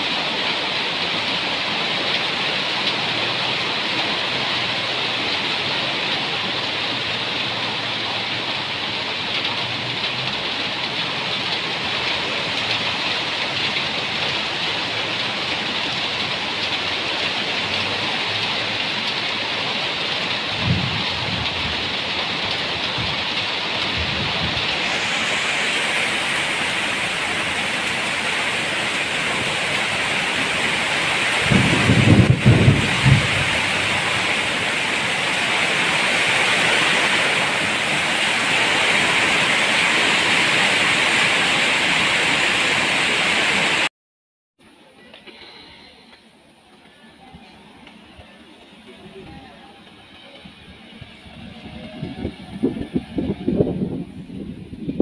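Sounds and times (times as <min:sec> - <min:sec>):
heavy rain hissing: 0:00.0 - 0:43.9, 0:45.3 - 0:55.0
low thunder rumbles: 0:20.4 - 0:27.9, 0:29.3 - 0:35.9, 0:50.5 - 0:55.0.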